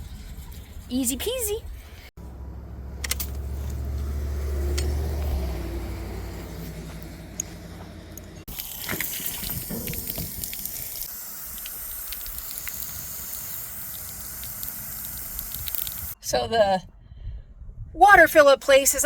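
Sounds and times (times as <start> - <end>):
low engine hum: 2.1 - 11.1
water gurgling and spilling: 8.5 - 16.2
water running into tank: 8.5 - 16.2.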